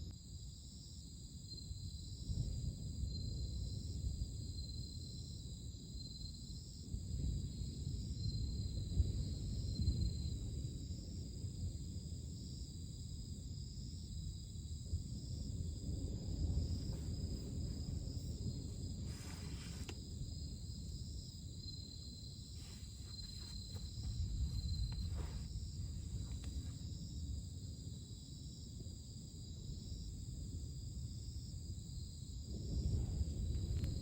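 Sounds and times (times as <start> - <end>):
insects chirring: 0.0 - 34.0
surf rumbling: 22.6 - 26.8.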